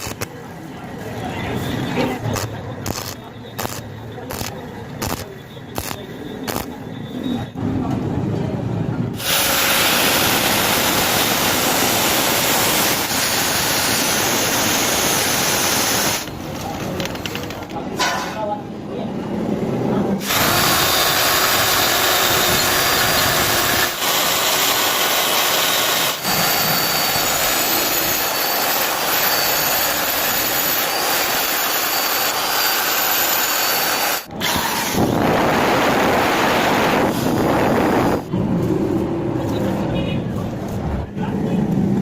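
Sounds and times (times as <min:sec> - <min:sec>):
power tool grinding into steel: 0:02.3 - 0:05.2, 0:20.2 - 0:35.2.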